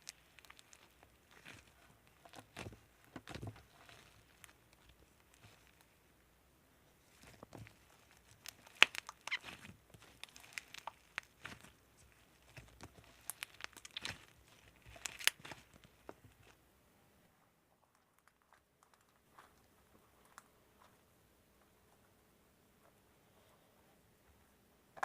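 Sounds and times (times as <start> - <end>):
slime crackling and popping: 0.0 - 6.0, 7.1 - 16.6.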